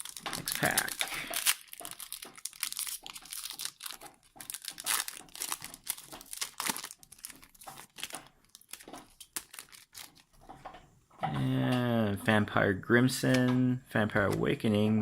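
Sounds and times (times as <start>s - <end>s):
foil wrapper tearing and crinkling: 0.0s - 10.4s.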